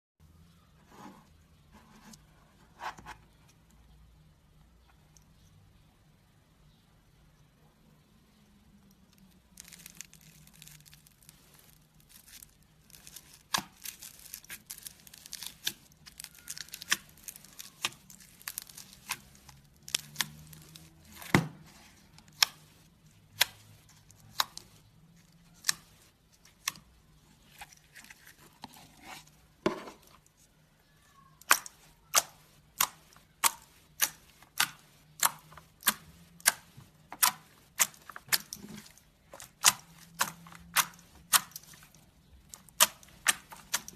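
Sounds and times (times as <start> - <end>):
slime squeezed with sticky pops: 9.5 - 22.7.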